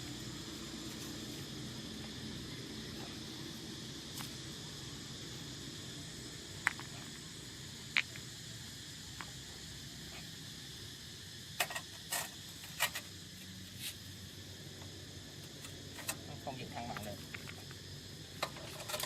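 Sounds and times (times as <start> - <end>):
steady background hiss: 0.0 - 19.0
rocks clicking and knocking: 6.6 - 7.2, 16.9 - 17.8.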